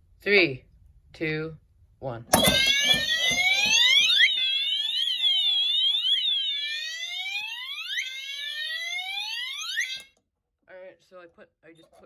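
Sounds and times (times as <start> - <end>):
rising siren sweeps: 2.4 - 10.1
warbling alarm tones: 2.4 - 10.1.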